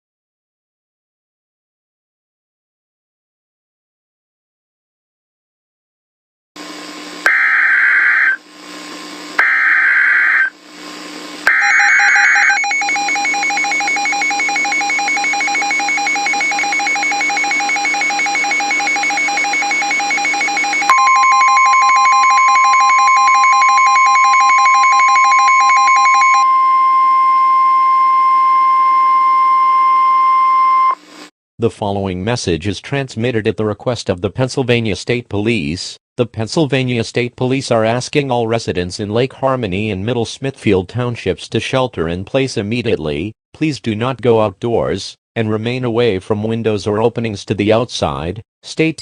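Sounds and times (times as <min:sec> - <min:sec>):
steady warning tone: 0:06.6 - 0:31.0
pulsing electronic alert signal: 0:07.3 - 0:08.4, 0:09.4 - 0:10.6, 0:11.5 - 0:26.6
screechy digital data tones: 0:07.3 - 0:08.4, 0:09.4 - 0:10.6, 0:11.5 - 0:13.2.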